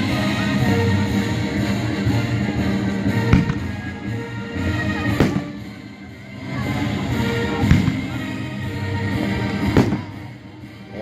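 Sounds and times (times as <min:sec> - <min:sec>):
rock music: 0:00.0 - 0:11.0
firework bangs: 0:02.9 - 0:05.9, 0:07.1 - 0:08.6, 0:09.3 - 0:10.5.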